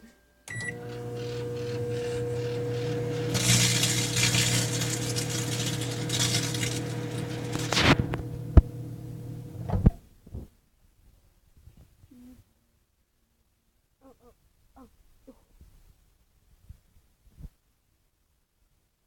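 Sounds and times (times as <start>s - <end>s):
microwave beep: 0.5s - 4.0s
microwave humming: 0.5s - 9.9s
chip bag crackling: 3.3s - 8.3s.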